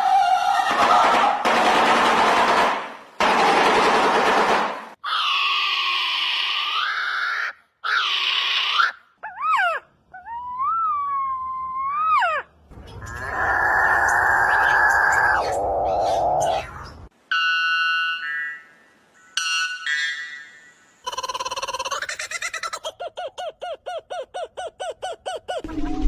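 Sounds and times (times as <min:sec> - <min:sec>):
harsh raspy bird calls: 0:05.0 - 0:09.8, 0:12.8 - 0:16.8.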